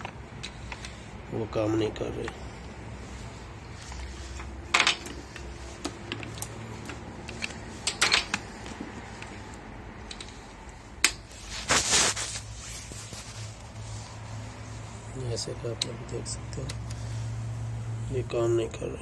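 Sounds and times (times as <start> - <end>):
sharp clicks and knocks of handling: 0.0 - 1.0, 3.8 - 11.3.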